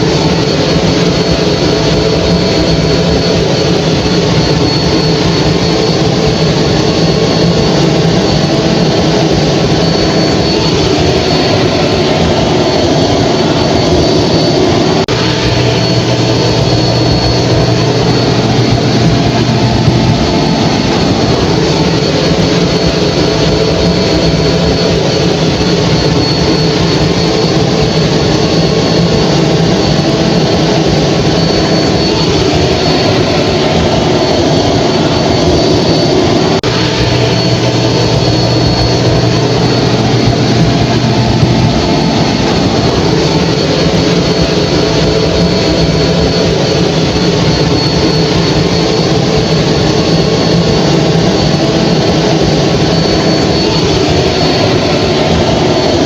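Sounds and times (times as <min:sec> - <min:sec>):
hair dryer running: 0:00.0 - 0:46.3
deeper hum: 0:00.0 - 0:56.0.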